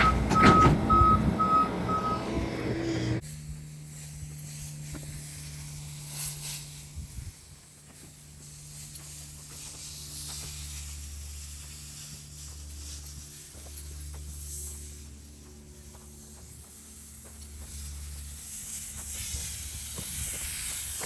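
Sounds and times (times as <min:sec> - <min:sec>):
diesel engine running: 0:00.0 - 0:05.7.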